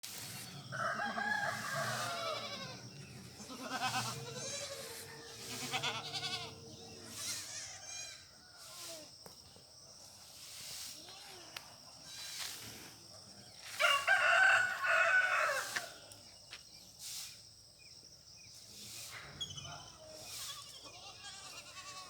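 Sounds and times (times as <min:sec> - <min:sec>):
rooster crowing: 0:00.6 - 0:02.9, 0:13.7 - 0:16.0
goat bleating: 0:01.7 - 0:08.2, 0:20.3 - 0:22.0.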